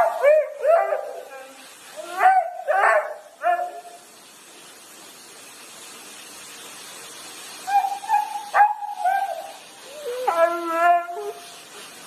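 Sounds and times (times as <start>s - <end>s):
dog howling: 0.0s - 3.9s, 7.7s - 11.5s.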